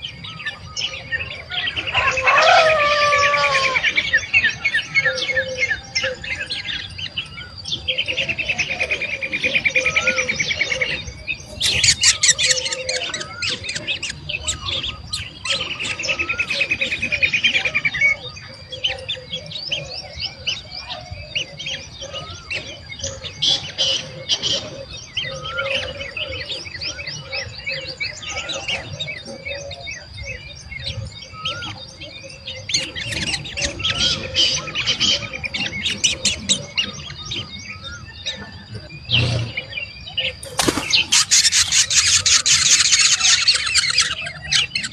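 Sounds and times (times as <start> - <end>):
birds chirping and calling: 0.0 - 44.9
fast bird trills: 9.7 - 17.5, 39.1 - 44.9.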